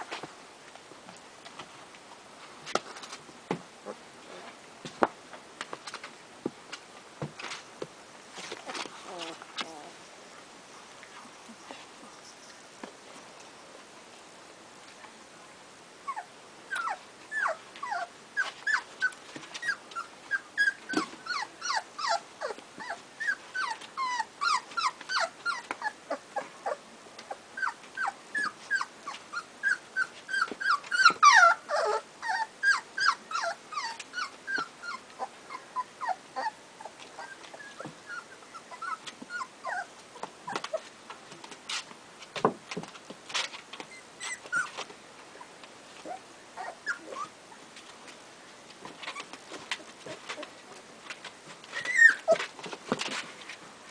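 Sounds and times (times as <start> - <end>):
puppies whimpering: 16.1 - 40.8, 43.9 - 44.8, 46.0 - 47.4, 51.7 - 52.5.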